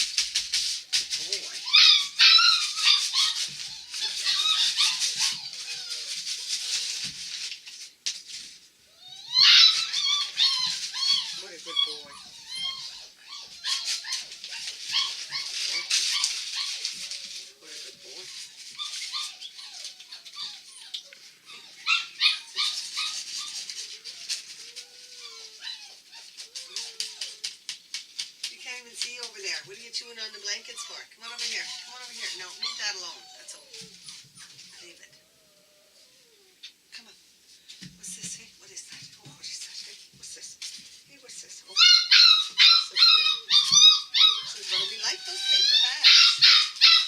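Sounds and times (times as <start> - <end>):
puppy moving and chewing: 0.0 - 35.2, 37.6 - 47.0
puppies whimpering: 1.2 - 7.1, 8.9 - 27.6, 29.4 - 36.6, 41.7 - 47.0.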